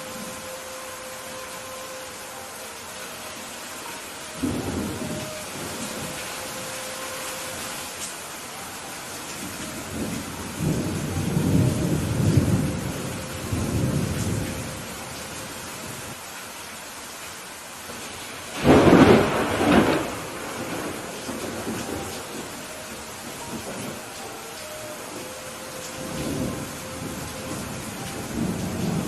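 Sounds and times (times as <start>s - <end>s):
steady rain: 0.0s - 29.0s
thunder rumbling: 3.8s - 7.9s, 9.4s - 16.1s, 17.9s - 29.0s
sharp thunderclap: 18.6s - 22.0s.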